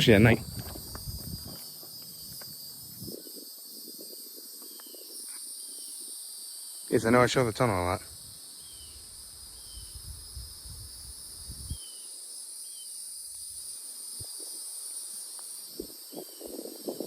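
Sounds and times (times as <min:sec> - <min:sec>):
wind buffeting microphone: 0:00.0 - 0:04.6, 0:09.8 - 0:11.8, 0:15.7 - 0:17.0
high-pitched insect chorus: 0:00.0 - 0:17.0.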